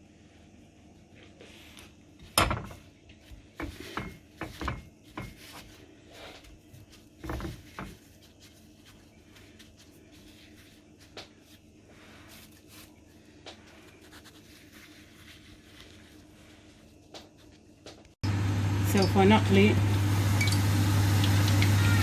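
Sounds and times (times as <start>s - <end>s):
dishes and utensils knocking: 3.6s - 5.5s.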